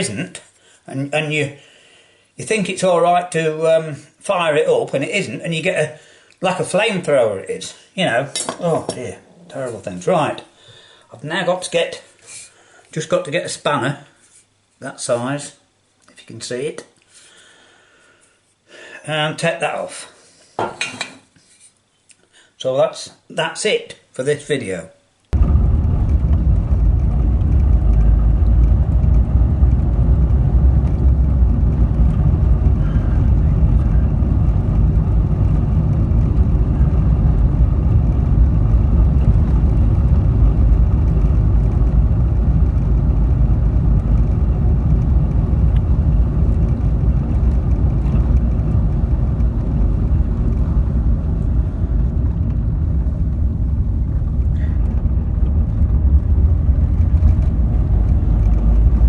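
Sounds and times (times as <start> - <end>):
car engine and road noise: 25.4 - 59.0.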